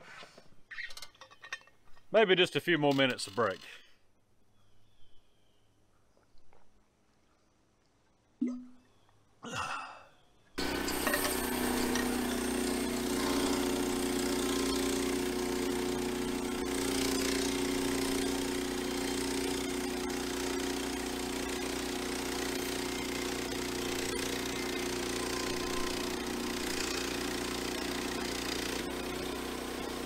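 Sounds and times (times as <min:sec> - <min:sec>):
small gasoline engine running: 0:10.6 - 0:30.0.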